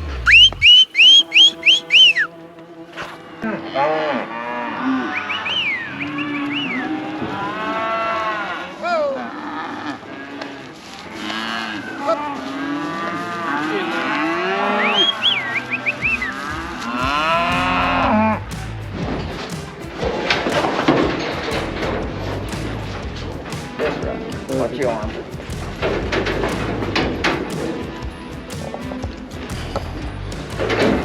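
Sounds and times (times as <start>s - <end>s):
cattle mooing: 0.0s - 19.5s
high short chirps: 0.2s - 2.3s.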